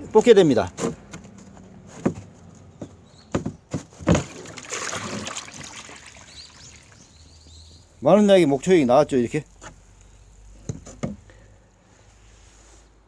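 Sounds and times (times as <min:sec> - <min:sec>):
liquid splashing: 0:04.2 - 0:07.2.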